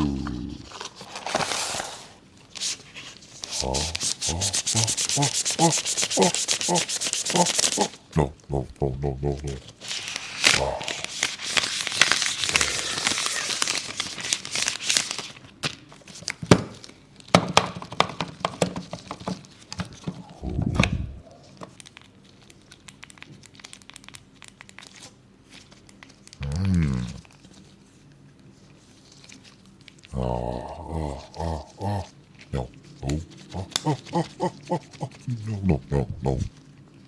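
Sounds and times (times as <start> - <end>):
packaging crinkling and tearing: 0.0 - 8.0, 9.4 - 17.3, 21.4 - 28.0, 28.7 - 35.3
short low sound: 20.4 - 21.3.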